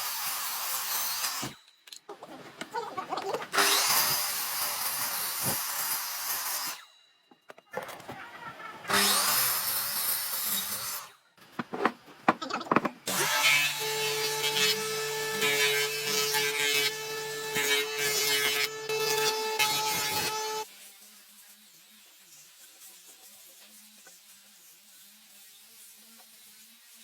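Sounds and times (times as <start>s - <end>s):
power tool working wood: 12.7s - 20.6s.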